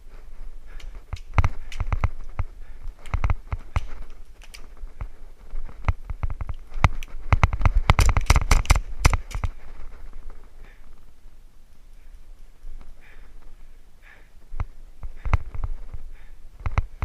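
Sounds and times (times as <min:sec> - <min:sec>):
airsoft guns firing: 0:07.5 - 0:09.6.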